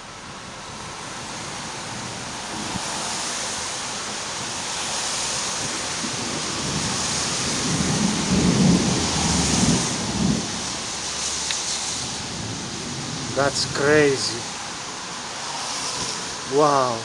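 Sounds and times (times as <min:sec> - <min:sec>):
heavy rain hissing: 0:00.0 - 0:17.0
thunder rumbling: 0:05.5 - 0:11.2, 0:12.0 - 0:14.4.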